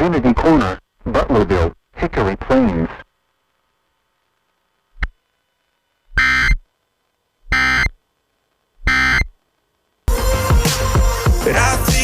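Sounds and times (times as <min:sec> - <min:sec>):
digital data tone bursts: 0:06.2 - 0:06.6, 0:07.5 - 0:08.0, 0:08.8 - 0:09.3.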